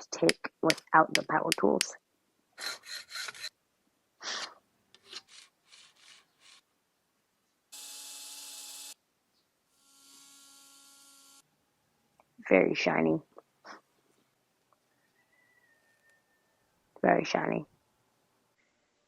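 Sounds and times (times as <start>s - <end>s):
file rasping on metal: 2.6s - 3.5s
power tool whining: 7.8s - 9.0s, 9.8s - 11.4s.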